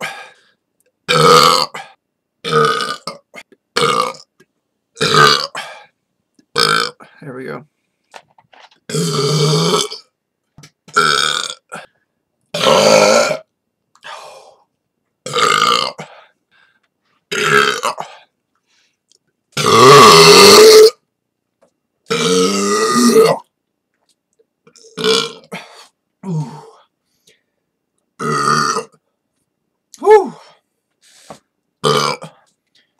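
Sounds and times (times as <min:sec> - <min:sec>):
person burping: 0:01.1 - 0:04.3, 0:05.0 - 0:05.8, 0:06.5 - 0:07.1, 0:08.9 - 0:10.1, 0:10.9 - 0:14.2, 0:15.2 - 0:16.2, 0:17.3 - 0:18.3, 0:19.6 - 0:21.0, 0:22.1 - 0:23.5, 0:24.7 - 0:26.9, 0:28.2 - 0:29.0, 0:31.8 - 0:32.5.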